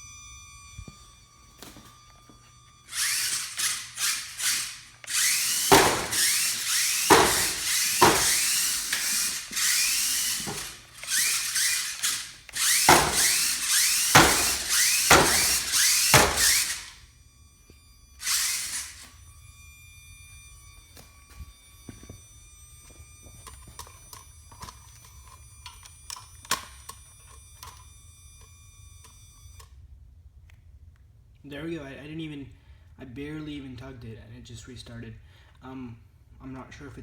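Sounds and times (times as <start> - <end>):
small electric motors whirring: 0.0 - 29.8
hard knocks: 5.6 - 8.6, 12.6 - 16.8.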